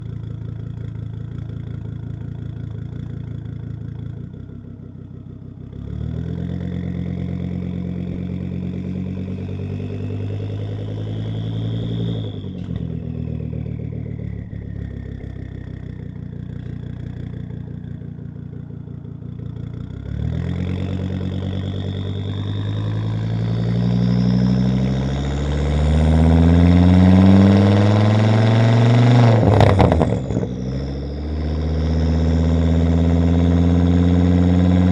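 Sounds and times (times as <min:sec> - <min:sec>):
car engine accelerating hard: 0:05.6 - 0:34.9
turbo whistle: 0:21.4 - 0:25.6.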